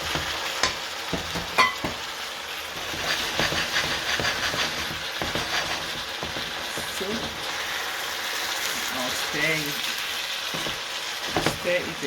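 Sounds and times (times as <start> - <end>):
utensil knocking against pan: 0.0 - 2.1, 2.8 - 7.5, 10.5 - 11.8
utensil scraping pan: 0.0 - 7.9, 10.4 - 11.9
food sizzling in frying pan: 0.0 - 12.0.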